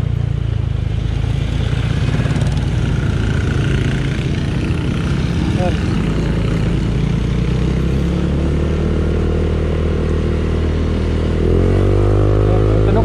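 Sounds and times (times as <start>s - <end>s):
scooter engine running: 0.0s - 8.7s.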